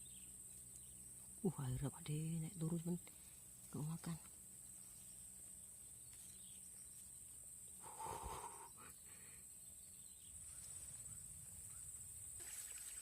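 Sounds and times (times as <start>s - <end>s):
steady high-pitched hiss: 0.0s - 13.0s.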